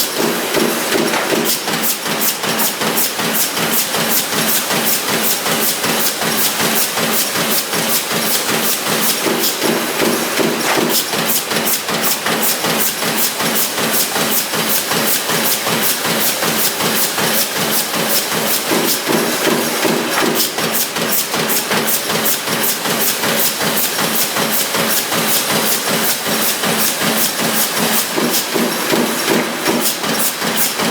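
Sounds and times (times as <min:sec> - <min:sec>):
press striking in rapid strokes: 0:00.0 - 0:03.4, 0:07.5 - 0:13.2, 0:16.6 - 0:22.0
steady machine noise and hiss: 0:00.0 - 0:30.9.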